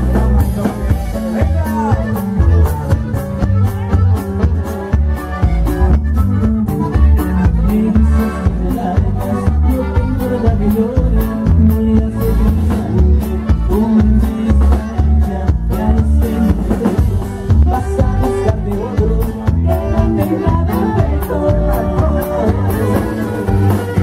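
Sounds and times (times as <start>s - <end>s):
drum kit beat: 0.0s - 24.0s
live band playing: 0.0s - 24.0s
person singing: 6.6s - 24.0s.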